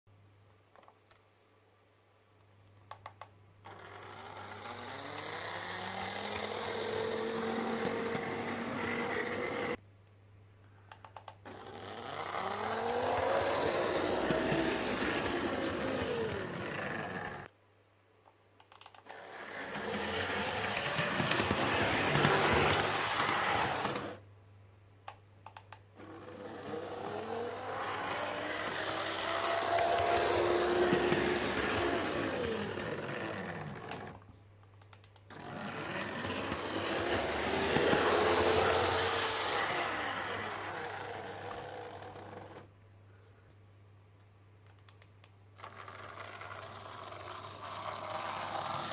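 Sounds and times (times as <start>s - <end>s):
model locomotive motor whining: 3.6s - 9.8s, 11.5s - 17.5s, 19.0s - 24.2s, 26.0s - 34.3s, 35.3s - 42.7s, 45.6s - 48.9s
clicks: 10.6s - 11.4s, 18.2s - 19.2s, 25.0s - 25.9s, 29.4s - 40.3s, 44.2s - 46.5s.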